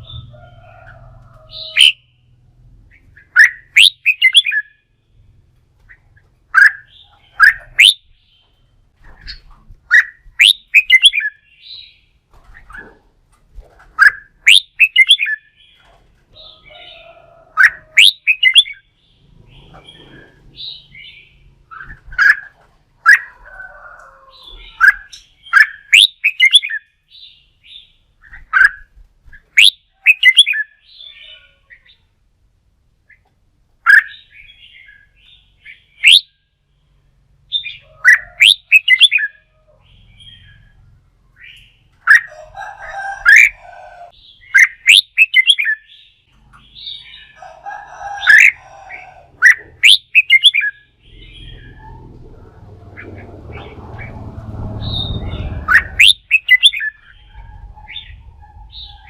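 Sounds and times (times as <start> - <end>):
bird singing whistled notes: 3.2 - 4.8, 6.6 - 8.5, 9.9 - 12.0, 14.0 - 15.5, 18.0 - 18.9, 24.6 - 27.9, 29.6 - 31.0, 33.9 - 36.4, 37.6 - 39.4, 44.4 - 46.2, 49.4 - 51.9, 54.8 - 59.0.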